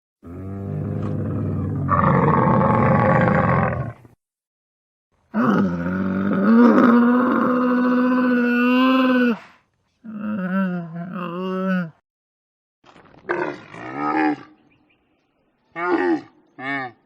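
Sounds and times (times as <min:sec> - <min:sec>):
camel groaning: 0:00.2 - 0:04.0.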